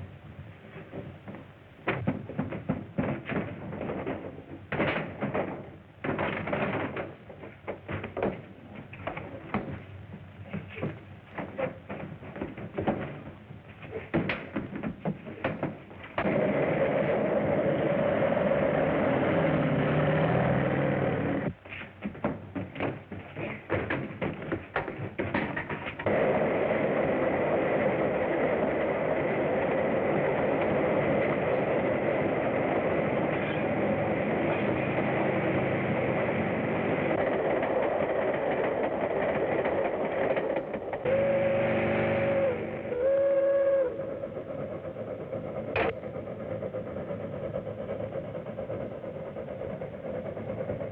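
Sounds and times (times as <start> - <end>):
train clattering and knocks: 0.0 - 50.9
loud steady rushing noise: 16.2 - 21.6
long held whistle note: 41.1 - 44.2.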